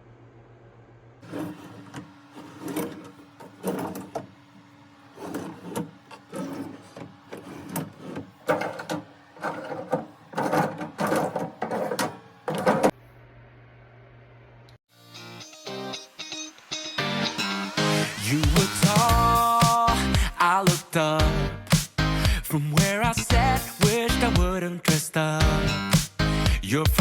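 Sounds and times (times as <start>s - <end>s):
furniture parts knocking and scraping: 1.2s - 4.4s, 5.2s - 12.9s.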